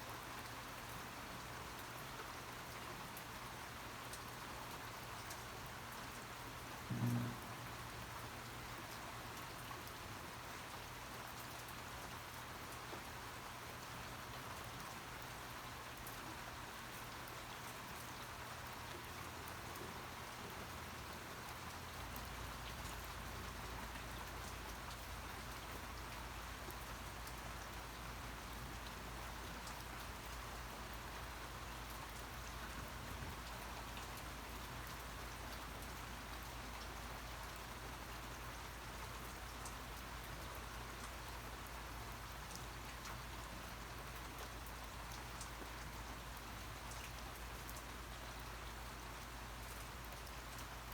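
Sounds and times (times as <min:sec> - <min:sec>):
steady rain falling: 0:00.0 - 0:50.9.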